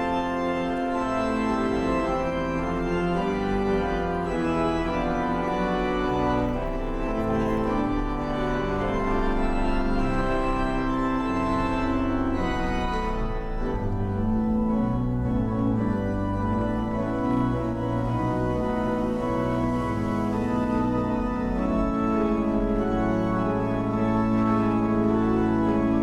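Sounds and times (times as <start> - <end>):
organ playing chords: 0.0 - 26.0.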